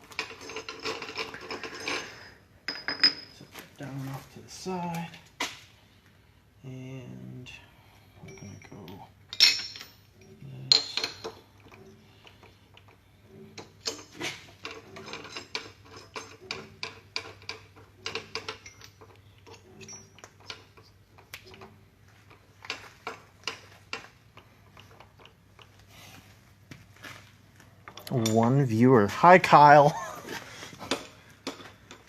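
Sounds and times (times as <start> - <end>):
low steady hum: 0.0 - 32.0
metal hand tools clinking: 8.2 - 12.0, 13.8 - 20.6.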